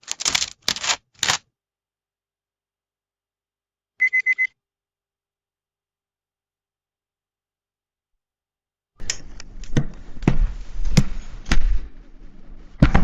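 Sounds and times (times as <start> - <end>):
sharp knocks and thuds: 12.8 - 13.0.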